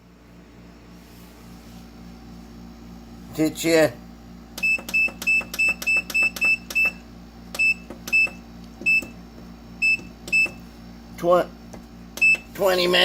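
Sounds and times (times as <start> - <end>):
keypad beeping: 4.6 - 9.2, 9.8 - 10.6, 12.2 - 12.6.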